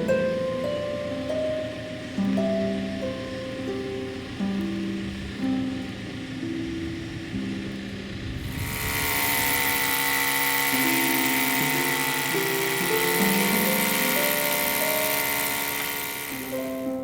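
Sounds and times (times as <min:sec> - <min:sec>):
soft background music: 0:00.0 - 0:08.5, 0:11.1 - 0:17.0
machine rushing with high whine: 0:05.8 - 0:17.0.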